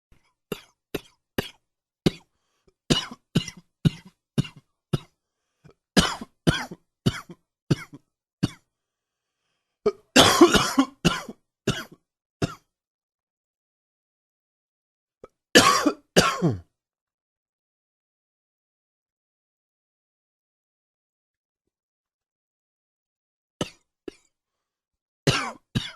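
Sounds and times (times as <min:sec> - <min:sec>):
man coughing: 0:06.0 - 0:08.6, 0:09.9 - 0:12.6, 0:15.6 - 0:16.7, 0:25.3 - 0:25.9.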